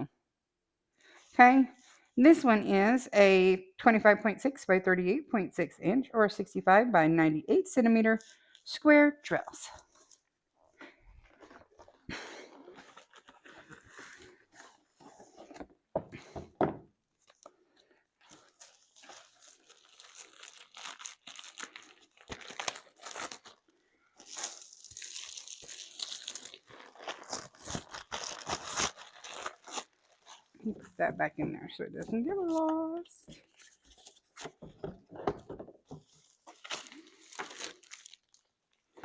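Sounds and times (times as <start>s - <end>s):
plastic and paper packaging rustling: 9.8s - 15.9s, 17.2s - 39.0s.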